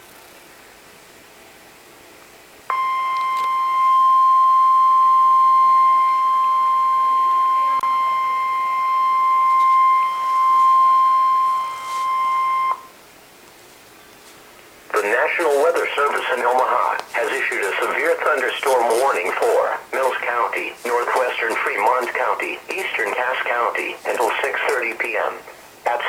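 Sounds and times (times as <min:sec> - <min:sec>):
steady alarm tone: 0:02.7 - 0:13.0, 0:15.0 - 0:26.0
faint radio hiss: 0:07.2 - 0:26.0.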